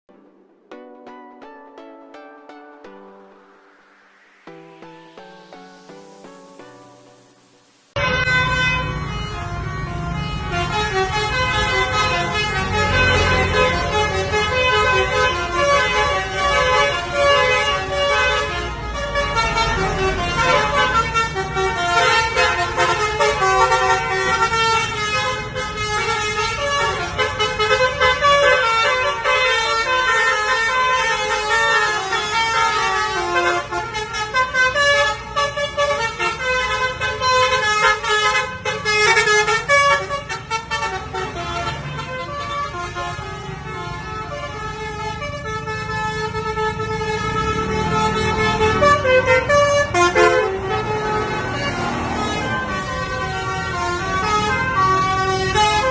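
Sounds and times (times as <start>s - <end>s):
bus multi-tone horn melody: 0.1s - 55.9s.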